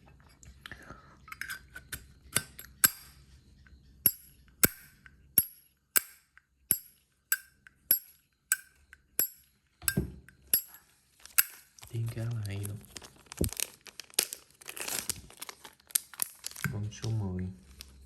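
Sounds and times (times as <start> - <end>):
lighter lid snapping open and shut: 2.3 - 3.1, 11.4 - 11.6.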